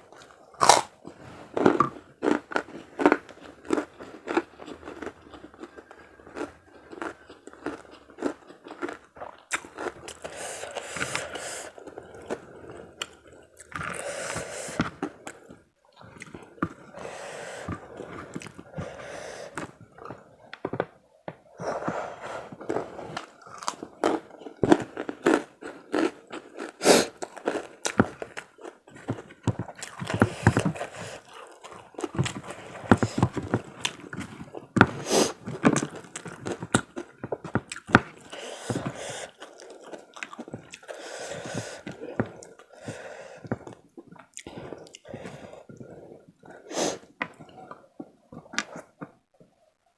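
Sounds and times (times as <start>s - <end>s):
crunchy bites: 0.1s - 12.4s, 22.7s - 40.9s
wet chewing: 0.1s - 20.9s, 22.5s - 49.2s.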